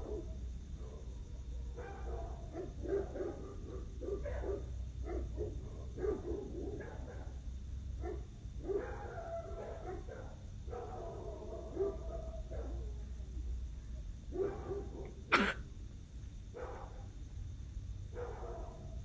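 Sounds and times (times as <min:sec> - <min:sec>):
dog barking: 0:00.0 - 0:01.0, 0:01.6 - 0:07.4, 0:08.0 - 0:13.0, 0:14.3 - 0:15.6, 0:16.6 - 0:17.1, 0:18.1 - 0:19.0.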